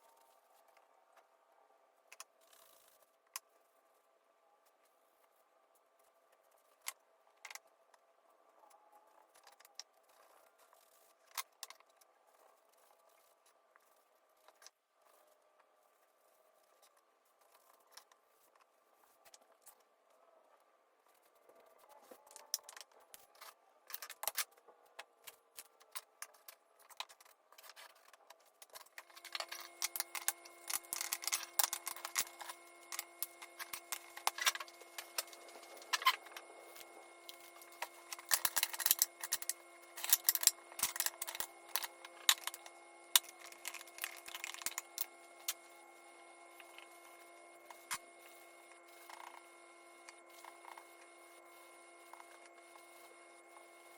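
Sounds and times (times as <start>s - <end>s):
electrical hum with fixed tones: 0.0s - 53.9s
small objects clicking and tapping: 22.2s - 45.6s.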